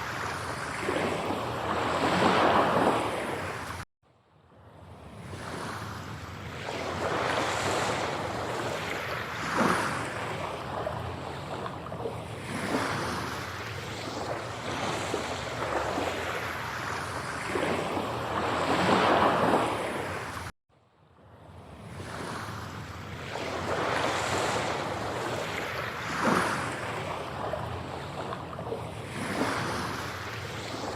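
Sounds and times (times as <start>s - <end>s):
waves washing onto shore: 0.0s - 3.9s, 4.6s - 20.5s, 21.3s - 30.9s.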